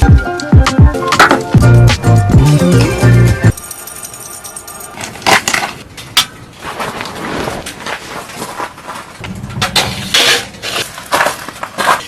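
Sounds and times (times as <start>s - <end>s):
background music: 0.0s - 5.0s.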